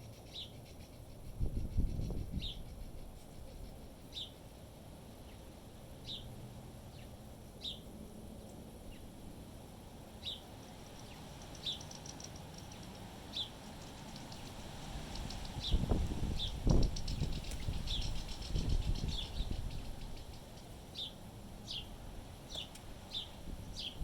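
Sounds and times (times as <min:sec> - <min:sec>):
bird chirping: 0:00.0 - 0:04.4, 0:05.2 - 0:06.3, 0:06.9 - 0:07.8, 0:10.2 - 0:24.0
wind rumble on microphone: 0:01.0 - 0:04.0, 0:14.3 - 0:20.6, 0:21.4 - 0:24.0.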